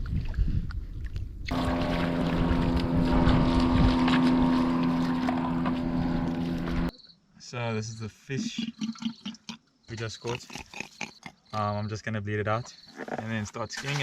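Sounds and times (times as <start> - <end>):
water rumble: 0.0 - 6.9
wind noise on microphone: 0.0 - 6.9
motorboat engine running: 1.5 - 6.9.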